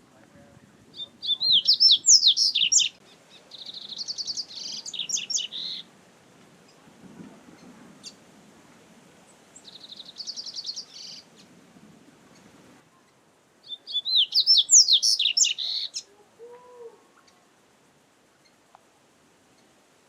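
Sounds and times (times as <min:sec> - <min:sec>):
bird singing whistled trills: 0:01.0 - 0:05.8, 0:09.6 - 0:11.2, 0:13.6 - 0:16.0.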